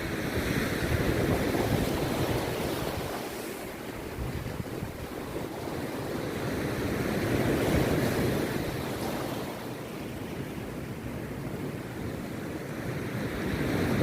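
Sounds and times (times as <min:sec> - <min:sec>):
sea surf crashing: 0:00.0 - 0:14.0.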